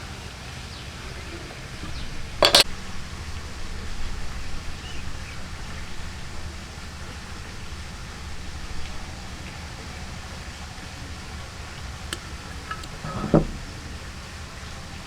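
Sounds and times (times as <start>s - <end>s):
low background noise: 0.0s - 15.0s
sharp knocks on wood: 12.7s - 13.7s.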